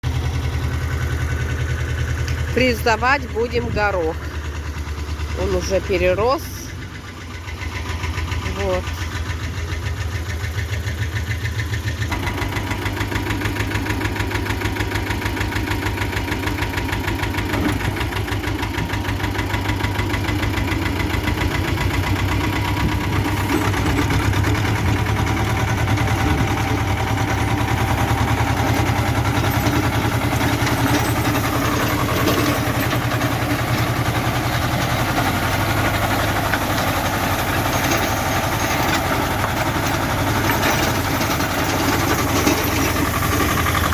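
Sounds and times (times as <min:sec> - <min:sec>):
tractor diesel engine running: 0:00.0 - 0:43.9
rotary tiller churning: 0:12.1 - 0:43.9.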